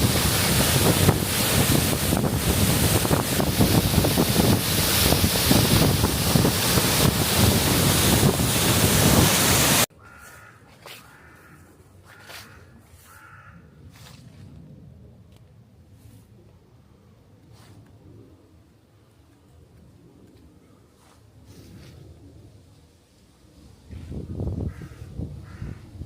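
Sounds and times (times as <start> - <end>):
waterfall rushing: 0.0 - 9.9.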